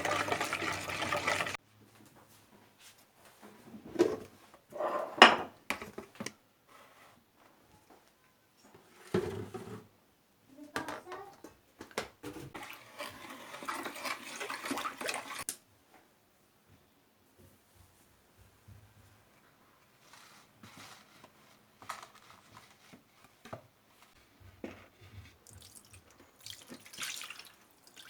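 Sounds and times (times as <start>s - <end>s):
rushing water: 0.0s - 1.6s
dishes clattering: 4.8s - 5.6s.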